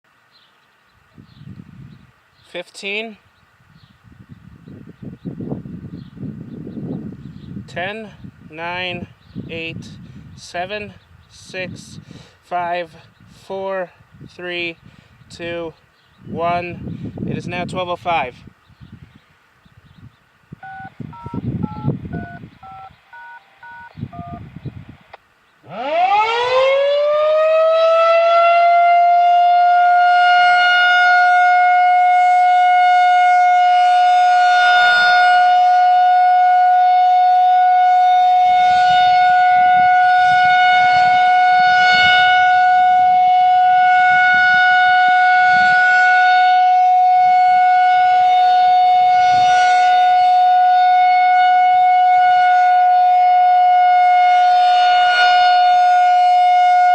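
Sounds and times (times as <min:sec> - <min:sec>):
radio activation tones: 0:20.6 - 0:24.5
rotating warning siren: 0:20.6 - 0:24.5, 0:25.6 - 0:56.9.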